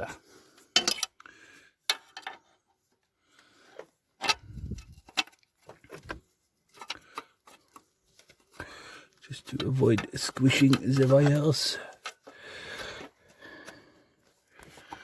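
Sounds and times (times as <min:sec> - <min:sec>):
small parts and tools clicking: 0:00.7 - 0:01.3, 0:01.9 - 0:02.4, 0:03.8 - 0:12.4.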